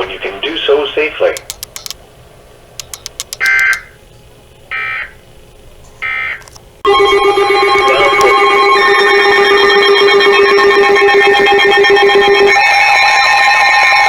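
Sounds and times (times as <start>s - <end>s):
buzzy warbling data bursts: 3.0s - 4.0s
multi-tone alert signal: 6.9s - 14.0s.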